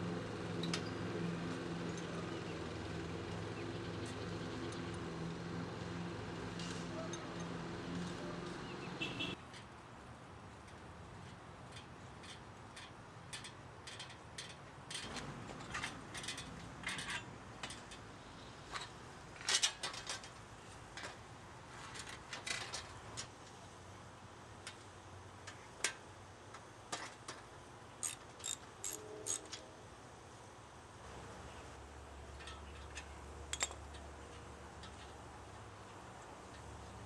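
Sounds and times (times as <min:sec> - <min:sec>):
hand tools clicking and clacking: 0:10.7 - 0:18.0, 0:25.4 - 0:29.6, 0:32.3 - 0:35.2.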